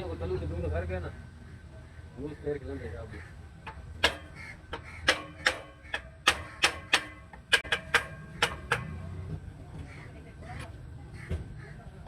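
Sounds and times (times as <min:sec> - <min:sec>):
hammer tapping on metal: 0:03.7 - 0:09.1.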